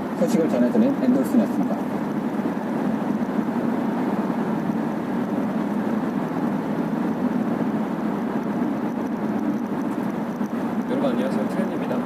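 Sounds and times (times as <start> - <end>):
car driving through tunnel: 0.0 - 12.0.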